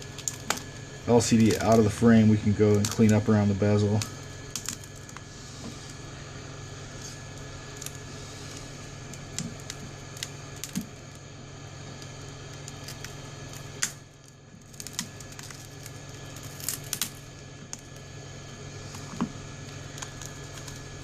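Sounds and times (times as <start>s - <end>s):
low hum: 0.0s - 21.0s
small plastic clicks and cracks: 9.1s - 10.9s, 12.0s - 18.0s, 19.1s - 20.9s.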